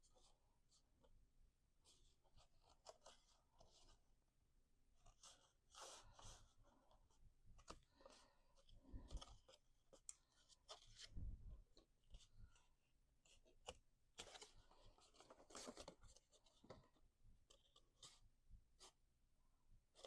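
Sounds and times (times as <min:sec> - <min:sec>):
cardstock rustling and crinkling: 0:05.0 - 0:19.0.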